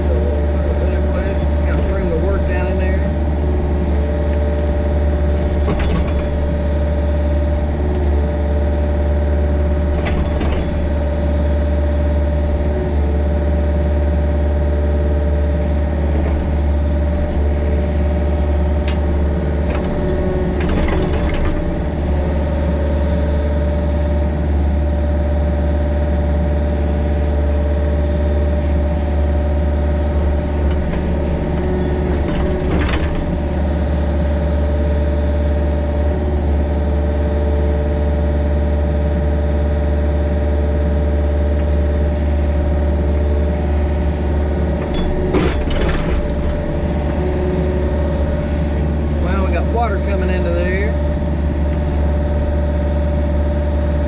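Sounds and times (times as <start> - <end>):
excavator diesel engine running: 0.0 - 54.0
digging clanks and scrapes: 44.8 - 50.2.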